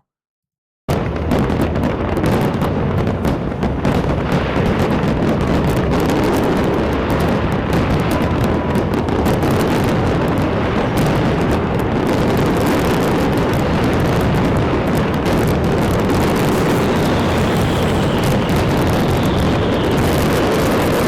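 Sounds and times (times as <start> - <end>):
fireworks barrage rumble: 0.9 - 21.0.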